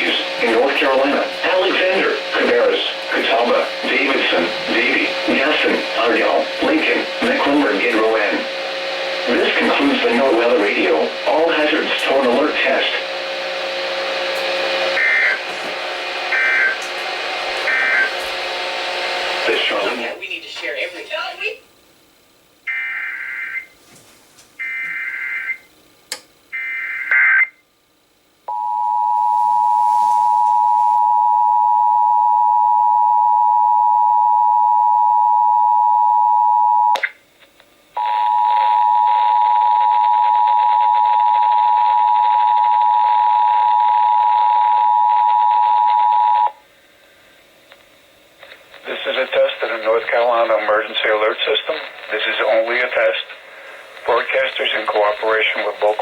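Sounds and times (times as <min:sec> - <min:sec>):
warbling data tones: 0:00.0 - 0:15.5, 0:16.2 - 0:19.2
click: 0:26.1 - 0:26.3.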